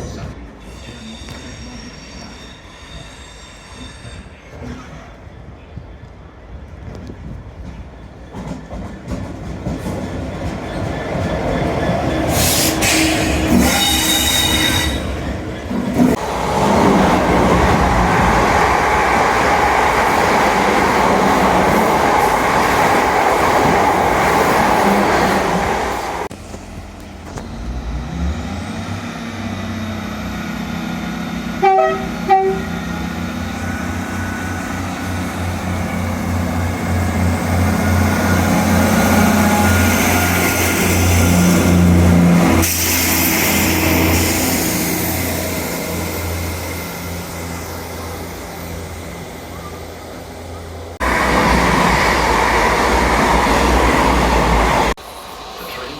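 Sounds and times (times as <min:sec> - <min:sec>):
train engine hum and whine: 0:00.0 - 0:55.9
train running past on rails: 0:00.0 - 0:55.9
train horn: 0:31.6 - 0:32.8.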